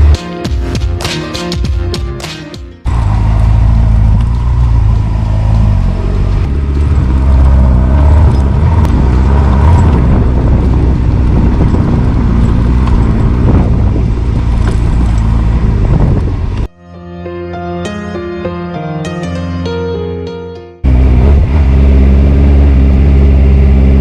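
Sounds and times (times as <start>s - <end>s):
motorcycle engine running: 2.9s - 16.7s, 20.8s - 24.0s.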